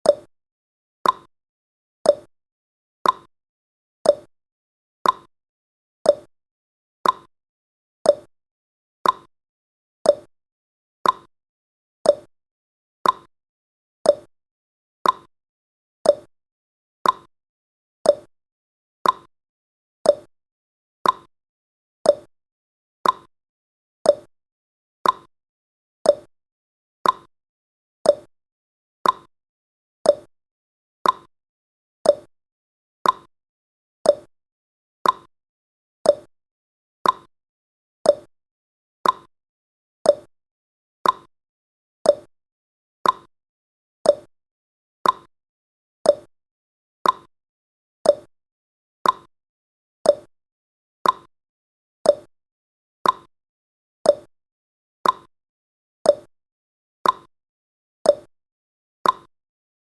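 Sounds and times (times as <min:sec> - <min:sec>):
timer ticking: 0:01.0 - 0:01.3, 0:02.1 - 0:02.3, 0:03.0 - 0:03.3, 0:04.1 - 0:04.3, 0:05.0 - 0:05.3, 0:06.1 - 0:06.3, 0:07.0 - 0:07.3, 0:08.1 - 0:08.3, 0:09.0 - 0:09.3, 0:10.1 - 0:10.3, 0:11.0 - 0:11.3, 0:12.1 - 0:12.3, 0:13.0 - 0:13.3, 0:14.1 - 0:14.3, 0:15.0 - 0:15.3, 0:16.1 - 0:16.3, 0:17.0 - 0:17.3, 0:18.1 - 0:18.3, 0:19.0 - 0:19.3, 0:20.1 - 0:20.3, 0:21.0 - 0:21.3, 0:22.1 - 0:22.3, 0:23.0 - 0:23.3, 0:24.1 - 0:24.3, 0:25.0 - 0:25.3, 0:26.1 - 0:26.3, 0:27.0 - 0:27.3, 0:28.1 - 0:28.3, 0:29.0 - 0:29.3, 0:30.1 - 0:30.3, 0:31.0 - 0:31.3, 0:32.0 - 0:32.3, 0:33.0 - 0:33.3, 0:34.1 - 0:34.3, 0:35.0 - 0:35.3, 0:36.0 - 0:36.3, 0:37.0 - 0:37.3, 0:38.1 - 0:38.3, 0:39.0 - 0:39.3, 0:40.1 - 0:40.3, 0:41.0 - 0:41.3, 0:42.1 - 0:42.3, 0:43.0 - 0:43.3, 0:44.1 - 0:44.3, 0:45.0 - 0:45.3, 0:46.1 - 0:46.3, 0:47.0 - 0:47.3, 0:48.0 - 0:48.3, 0:49.0 - 0:49.3, 0:50.1 - 0:50.3, 0:51.0 - 0:51.3, 0:52.1 - 0:52.3, 0:53.0 - 0:53.3, 0:54.1 - 0:54.3, 0:55.0 - 0:55.3, 0:56.1 - 0:56.3, 0:57.0 - 0:57.3, 0:58.1 - 0:58.3, 0:59.0 - 0:59.3.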